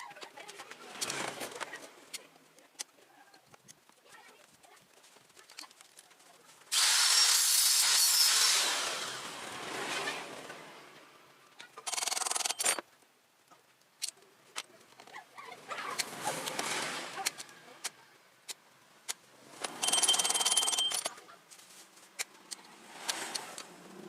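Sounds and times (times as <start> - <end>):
power tool hissing and scraping: 6.7 - 10.6.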